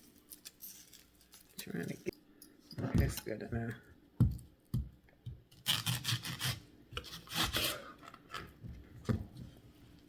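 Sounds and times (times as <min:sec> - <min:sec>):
knife slicing onion: 0:04.3 - 0:08.5.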